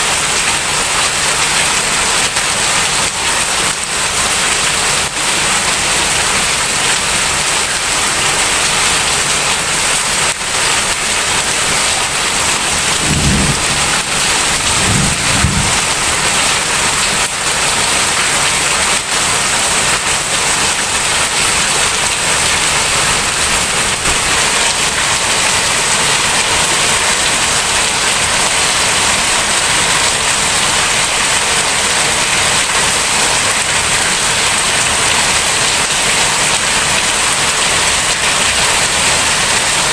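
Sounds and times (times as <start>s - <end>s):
heavy rain pouring: 0.0s - 39.9s
low rumbles: 11.5s - 16.7s.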